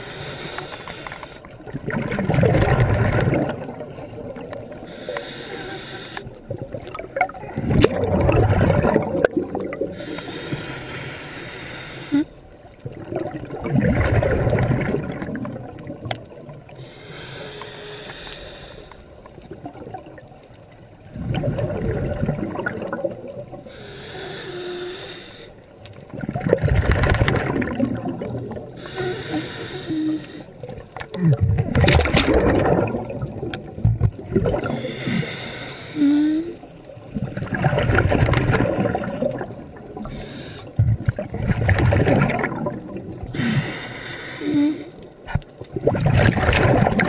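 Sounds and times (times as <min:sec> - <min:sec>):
regulator hiss on inhale: 0:00.0 - 0:01.6, 0:04.8 - 0:06.5, 0:09.9 - 0:12.4, 0:16.7 - 0:19.3, 0:23.6 - 0:25.8, 0:28.7 - 0:30.8, 0:34.6 - 0:36.7, 0:39.4 - 0:40.8, 0:43.3 - 0:45.2
exhaled bubbles rushing: 0:01.6 - 0:04.9, 0:06.4 - 0:10.1, 0:12.8 - 0:16.8, 0:19.3 - 0:20.4, 0:21.0 - 0:23.7, 0:26.1 - 0:28.8, 0:30.6 - 0:34.8, 0:37.0 - 0:43.4, 0:45.3 - 0:47.0.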